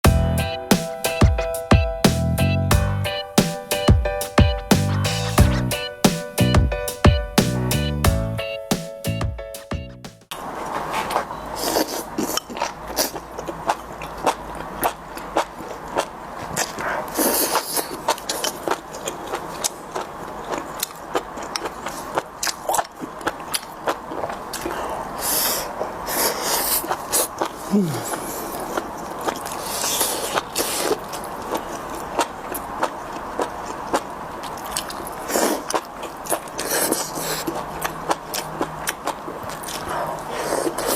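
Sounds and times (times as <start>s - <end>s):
crunchy chewing: 10.6s - 40.9s.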